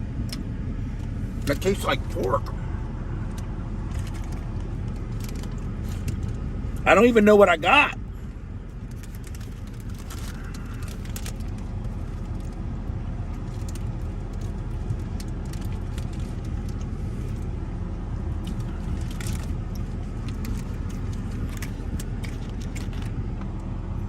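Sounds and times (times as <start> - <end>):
truck engine idling: 0.0 - 24.0
light clicks and crinkles: 3.2 - 6.8, 8.7 - 17.5, 18.3 - 23.7.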